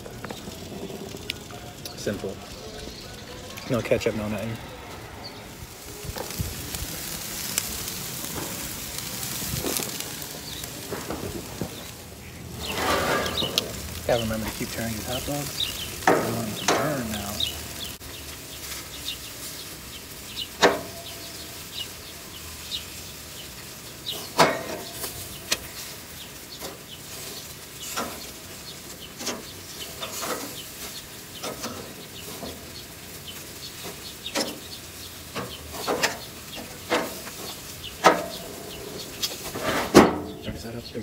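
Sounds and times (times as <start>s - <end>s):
hot dogs sizzling on a grill: 0.0s - 41.0s.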